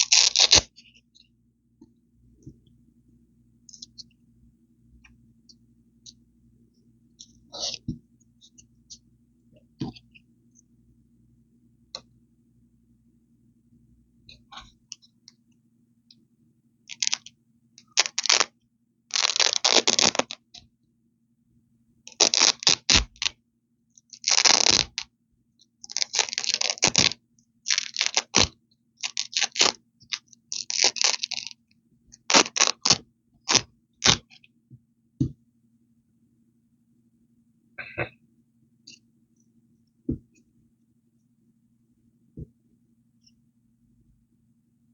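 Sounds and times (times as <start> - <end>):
velcro strips ripping: 0.0 - 0.8, 16.9 - 17.3, 17.9 - 18.5, 19.1 - 20.4, 22.1 - 23.4, 24.1 - 25.1, 25.8 - 29.8, 30.5 - 31.6, 32.3 - 34.3.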